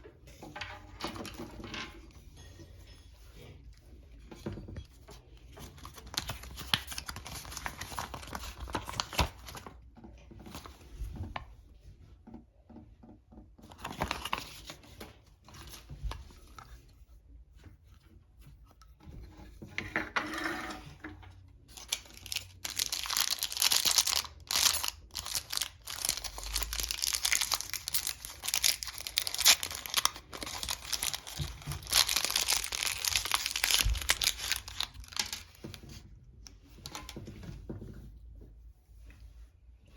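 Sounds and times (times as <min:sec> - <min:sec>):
packaging tearing and crinkling: 0:21.7 - 0:35.6.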